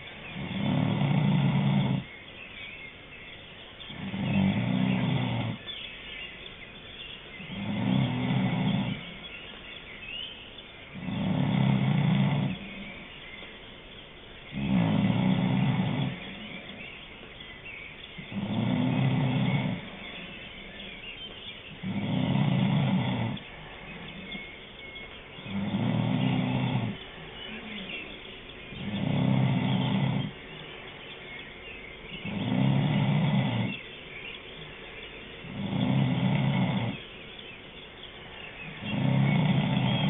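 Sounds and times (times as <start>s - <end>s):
person snoring: 0.3s - 2.1s, 7.5s - 9.2s, 28.8s - 30.3s, 38.8s - 40.0s.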